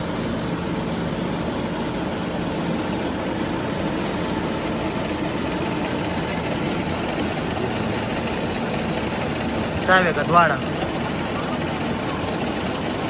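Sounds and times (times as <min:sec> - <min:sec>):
workshop machinery droning: 0:00.0 - 0:13.0.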